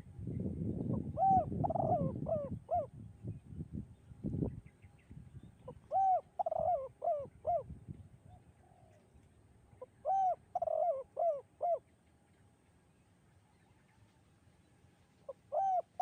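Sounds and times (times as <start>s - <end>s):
dove cooing: 0.9s - 2.9s, 5.6s - 9.0s, 9.8s - 11.9s, 15.3s - 16.0s.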